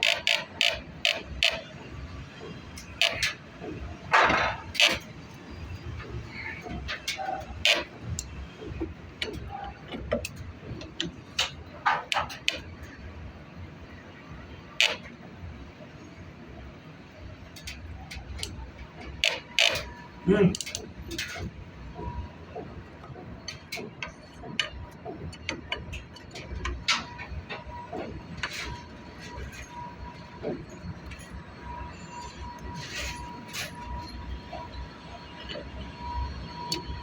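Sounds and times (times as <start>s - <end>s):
tools clicking on plumbing fittings: 19.2s - 21.5s.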